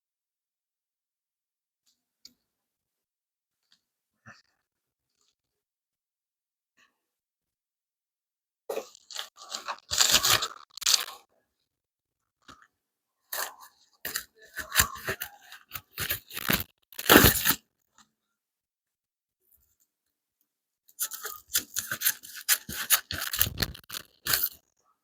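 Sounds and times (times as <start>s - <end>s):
crinkling and rustling handling noise: 8.7s - 11.2s, 13.3s - 18.1s, 21.0s - 24.6s.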